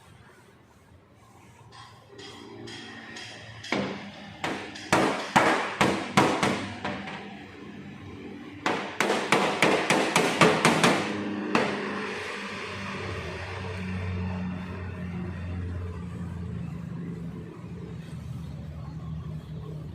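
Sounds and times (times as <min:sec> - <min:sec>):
hammer strikes: 0:01.7 - 0:12.5.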